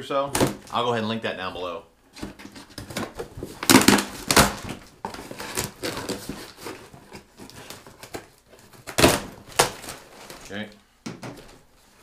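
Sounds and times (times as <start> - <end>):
cardboard packaging rustling: 2.2 - 10.7.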